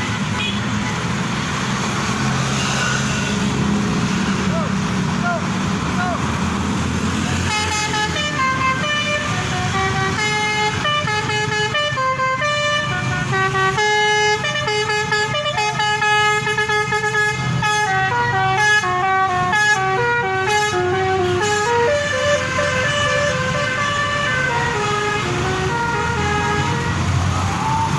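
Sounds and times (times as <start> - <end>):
bus horn playing a tune: 0.0 - 0.7, 7.4 - 27.1
bus engine running: 3.4 - 27.9.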